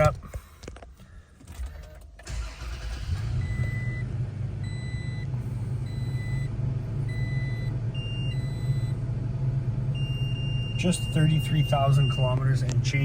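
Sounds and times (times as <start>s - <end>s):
warning chime beeping: 10.0s - 12.6s.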